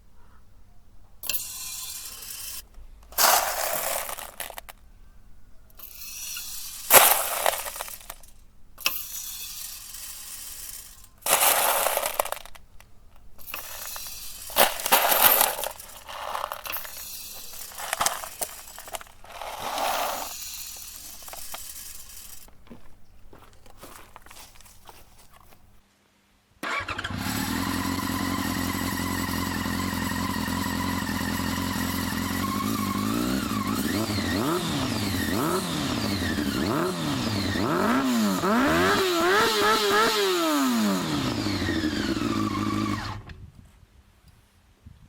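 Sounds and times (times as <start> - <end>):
plastic pellets rattling on metal: 1.2 - 4.9, 5.7 - 25.8.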